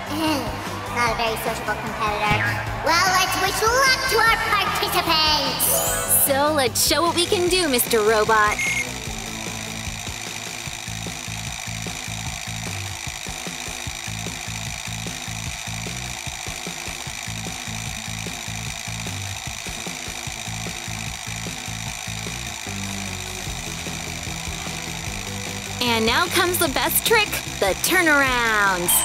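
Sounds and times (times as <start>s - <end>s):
background music: 0.0s - 29.0s
small electric motors whirring: 7.6s - 29.0s.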